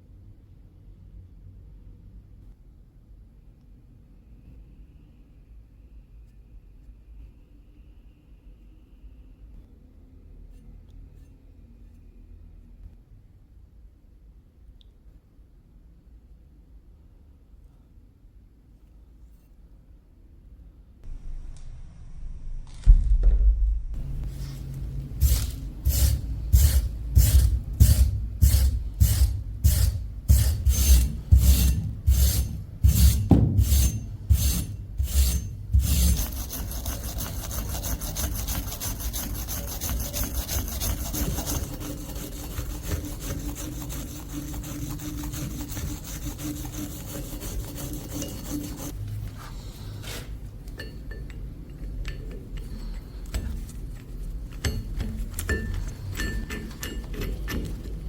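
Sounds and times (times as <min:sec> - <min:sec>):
scraping rusty metal by hand: 0:24.0 - 0:49.0
steady rubbing: 0:24.0 - 0:50.6.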